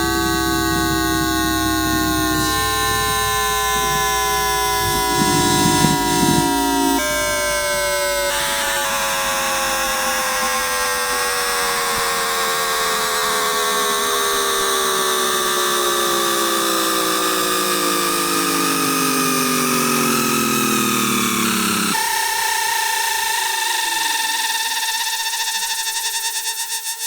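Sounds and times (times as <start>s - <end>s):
electric train motor whine: 0.0s - 13.6s, 16.2s - 22.0s.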